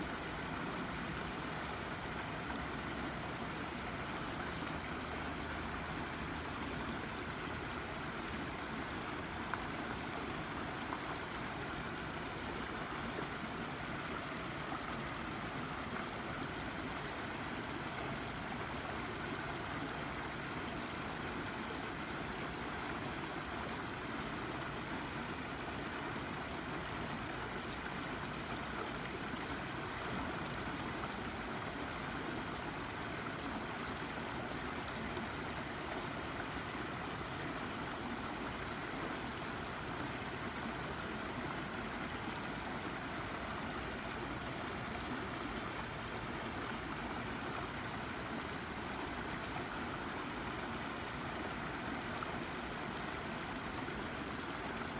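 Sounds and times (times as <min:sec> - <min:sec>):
brook babbling over rock: 0:00.0 - 0:54.9.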